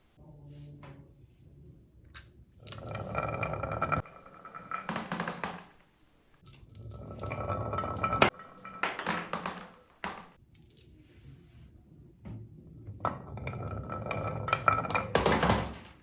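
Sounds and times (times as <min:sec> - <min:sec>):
glass marbles rolling down a track: 0:02.7 - 0:10.4, 0:13.1 - 0:16.0
marbles clacking against track: 0:02.7 - 0:10.4, 0:13.7 - 0:16.0.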